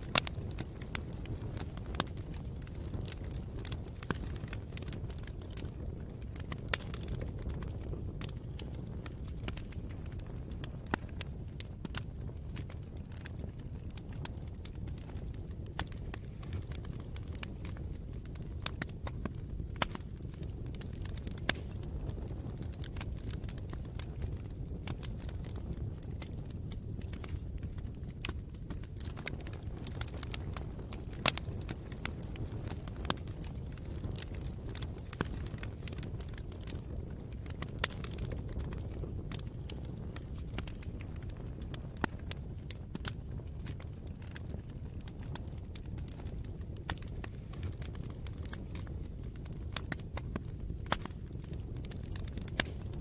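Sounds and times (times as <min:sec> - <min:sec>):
fire crackling and popping: 0:00.0 - 0:53.0
fire rumbling: 0:00.0 - 0:53.0.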